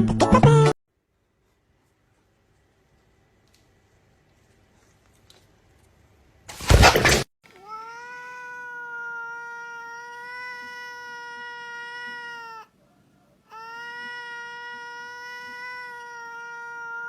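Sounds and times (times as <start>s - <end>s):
cat yowling: 7.5s - 12.8s, 13.5s - 17.0s.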